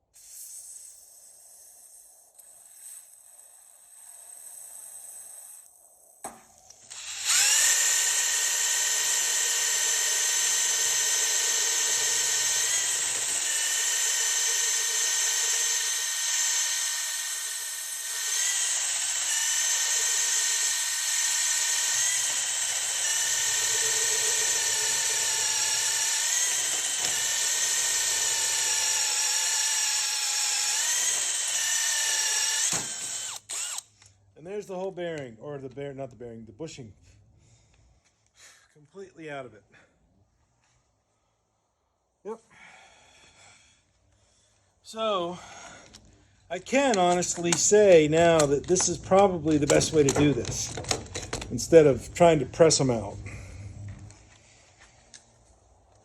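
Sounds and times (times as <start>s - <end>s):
power tool motor whining: 6.3s - 34.0s, 46.8s - 55.3s.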